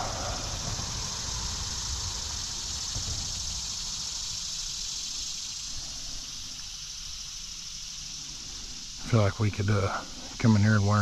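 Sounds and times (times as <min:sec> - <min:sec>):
low rumble: 0:00.0 - 0:06.1
high-pitched hiss: 0:00.0 - 0:11.0.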